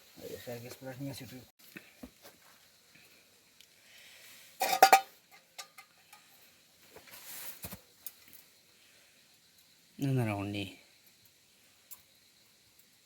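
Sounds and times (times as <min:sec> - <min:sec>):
cookware clattering: 0:04.6 - 0:05.9.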